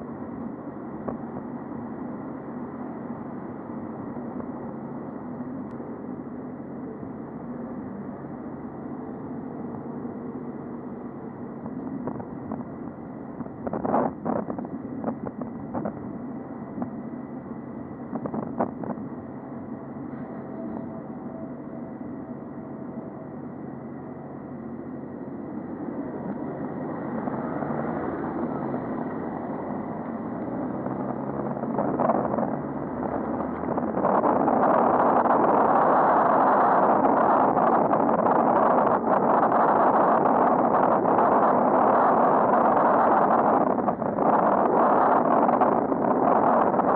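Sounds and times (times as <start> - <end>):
road traffic rumble: 0.0 - 46.9
vehicle engines running: 0.0 - 46.9
wind on microphone: 11.6 - 17.0, 18.0 - 23.0, 25.4 - 46.9.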